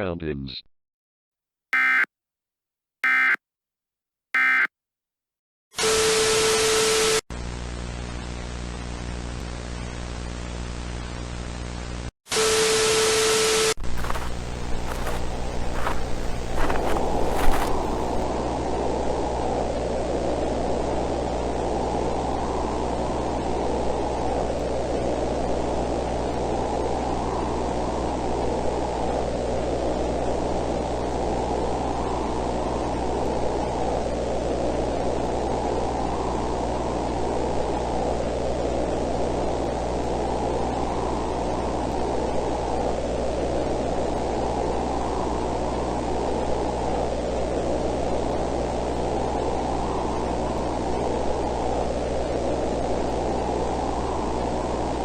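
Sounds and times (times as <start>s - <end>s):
dull static noise: 13.8s - 18.2s.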